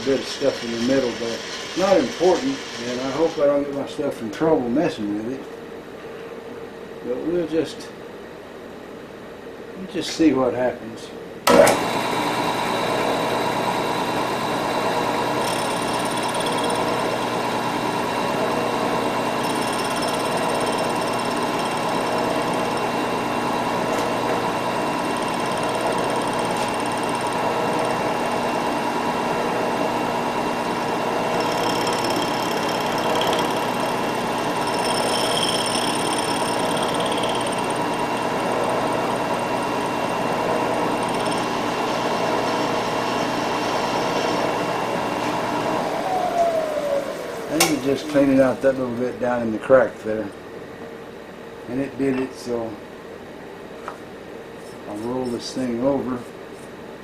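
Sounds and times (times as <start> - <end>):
milling machine hum: 0.0 - 3.5, 11.5 - 48.7
cutter squealing on metal: 31.3 - 38.1.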